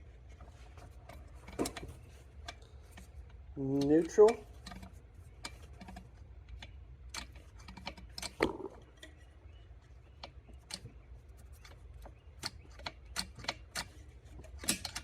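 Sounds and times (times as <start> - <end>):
gearbox clicking and knocking: 11.5 - 15.0.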